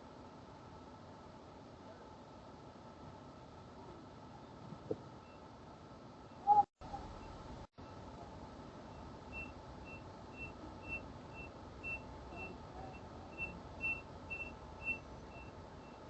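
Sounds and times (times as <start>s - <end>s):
alarm beeping: 9.0s - 16.0s.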